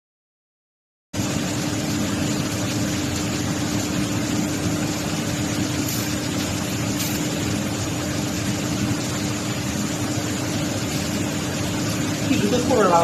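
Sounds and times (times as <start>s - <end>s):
welding equipment hum: 1.2s - 13.0s
welding equipment hiss: 5.1s - 12.9s.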